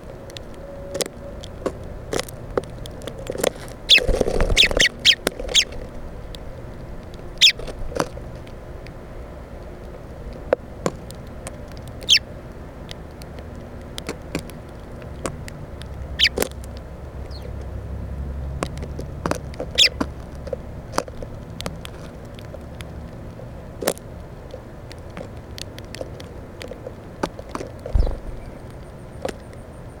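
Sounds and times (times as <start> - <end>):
birds pecking at plastic feeder: 0.2 - 29.7
low rumble: 27.9 - 28.8.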